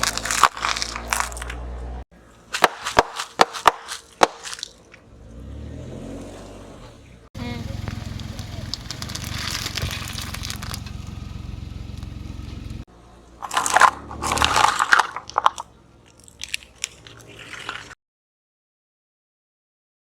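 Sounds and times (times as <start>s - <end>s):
brittle object crunching and cracking: 0.0s - 1.6s, 2.5s - 5.0s, 8.3s - 11.2s, 13.4s - 18.0s
car engine rumbling: 0.0s - 2.6s, 4.0s - 17.9s.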